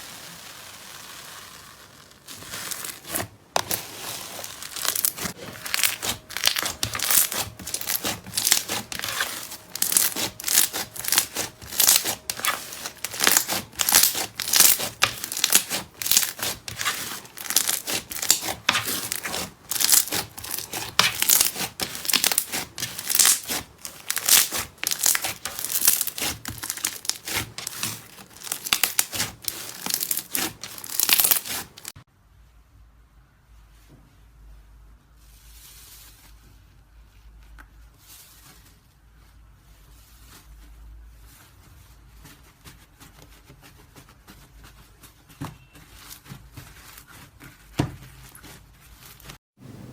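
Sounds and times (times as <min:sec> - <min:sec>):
slime crackling and popping: 0:00.0 - 0:32.0.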